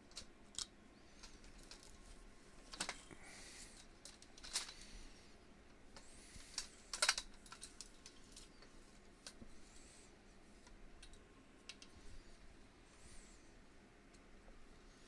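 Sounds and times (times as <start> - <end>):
light clicks and taps: 10.6 - 12.0.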